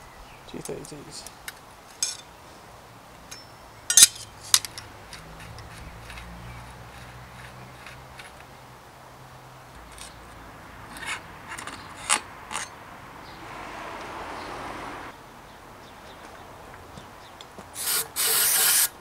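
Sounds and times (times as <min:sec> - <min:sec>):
metal bicycle parts clicking: 0:03.3 - 0:08.6, 0:09.7 - 0:10.3, 0:10.9 - 0:12.8
gritty rubbing: 0:04.0 - 0:08.6, 0:09.8 - 0:12.8, 0:17.8 - 0:19.0.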